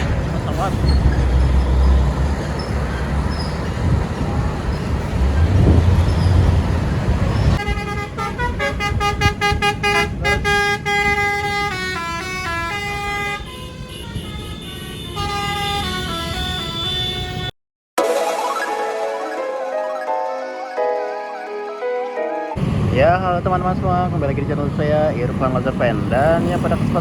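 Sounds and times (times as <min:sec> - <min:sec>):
roadside traffic rumble: 0:00.0 - 0:17.5, 0:22.2 - 0:27.0
multi-trumpet bus horn melody: 0:07.6 - 0:17.5.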